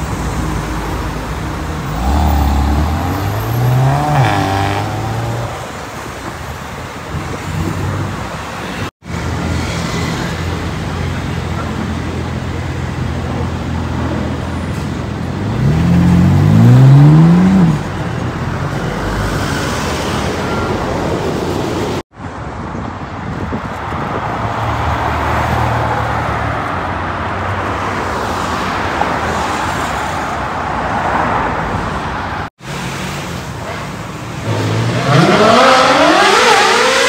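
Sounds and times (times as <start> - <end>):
street traffic: 0.0 - 37.0
car engine accelerating hard: 1.8 - 5.7, 34.4 - 37.0.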